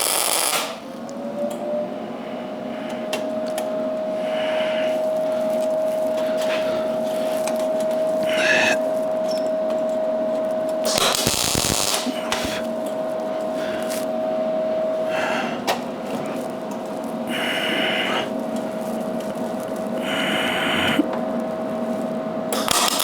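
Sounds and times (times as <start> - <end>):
welding bursts: 0.0 - 1.0, 10.8 - 14.1, 22.5 - 23.0
steady hum: 0.0 - 23.0.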